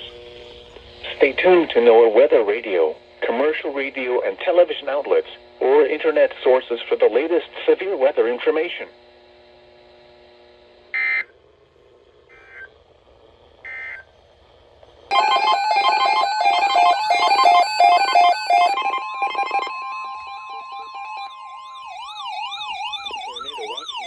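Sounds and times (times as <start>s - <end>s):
electronic data bursts: 10.9s - 11.3s, 12.3s - 12.8s, 13.6s - 14.2s, 15.1s - 24.0s
synthesized pulsing alert tone: 15.1s - 24.0s.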